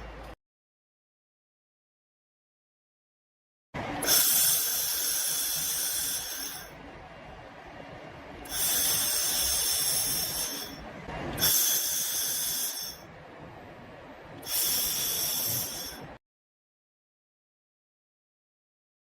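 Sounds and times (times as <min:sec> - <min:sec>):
laser welding machine hissing: 0:03.8 - 0:06.9, 0:08.3 - 0:13.2, 0:14.3 - 0:16.2.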